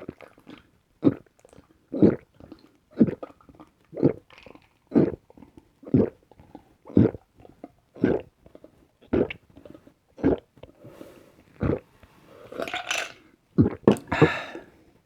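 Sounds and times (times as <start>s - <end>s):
person gulping: 0.0s - 7.3s, 8.0s - 9.4s, 10.2s - 10.8s, 11.5s - 14.8s
breathy noise: 14.0s - 14.8s.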